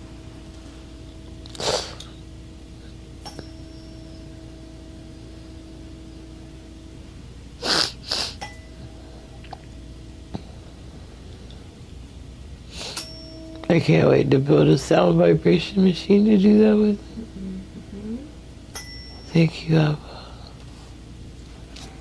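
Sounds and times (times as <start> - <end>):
sharp breaths through nose: 7.6 - 8.5.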